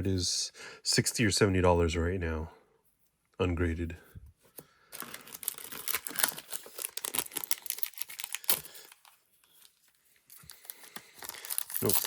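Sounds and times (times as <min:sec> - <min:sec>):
foil wrapper crinkling: 0:04.9 - 0:12.0.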